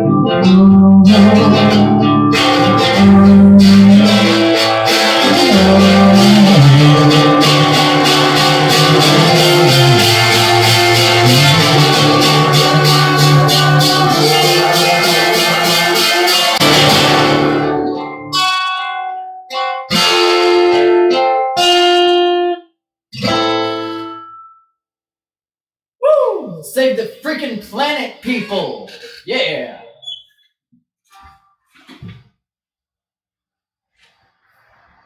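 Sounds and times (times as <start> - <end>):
strummed acoustic guitar: 0.0 - 22.6, 23.2 - 24.4.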